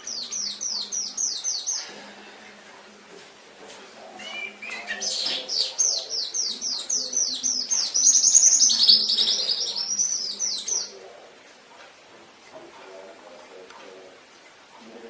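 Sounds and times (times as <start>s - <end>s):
canary singing: 0.0s - 2.0s, 4.0s - 11.4s.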